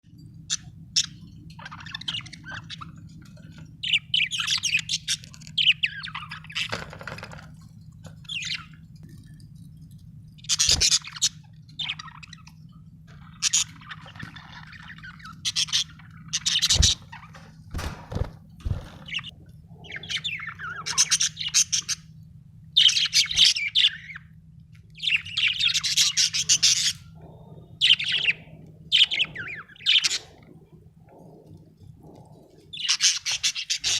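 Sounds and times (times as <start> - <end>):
low background hum: 0.0 - 33.9
budgerigar chirping and warbling: 10.4 - 17.5, 18.8 - 22.1, 22.8 - 24.4, 25.0 - 27.2, 27.8 - 30.4, 32.7 - 33.9.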